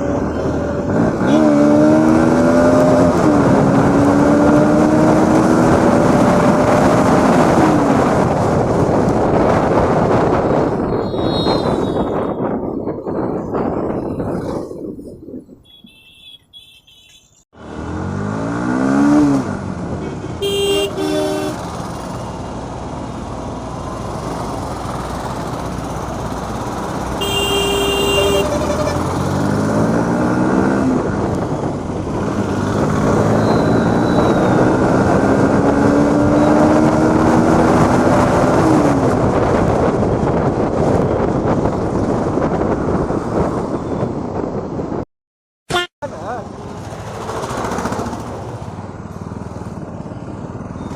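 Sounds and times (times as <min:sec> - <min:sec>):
motorcycle engine accelerating: 0:00.0 - 0:14.7, 0:17.6 - 0:43.6, 0:46.2 - 0:50.9
wind noise on microphone: 0:00.0 - 0:16.6, 0:23.4 - 0:45.0
vehicle horn: 0:11.0 - 0:12.5, 0:15.7 - 0:17.4, 0:20.4 - 0:21.7, 0:27.2 - 0:29.1, 0:45.7 - 0:46.0.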